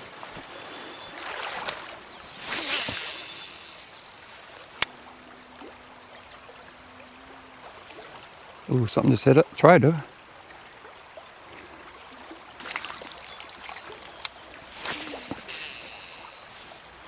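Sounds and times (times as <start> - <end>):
faint reel hum: 0.0 - 8.7, 10.1 - 17.0
creek water running: 0.0 - 17.0
fishing cast whooshing: 1.6 - 4.5, 14.6 - 16.9
sharp click: 2.5 - 4.2, 14.2 - 16.5.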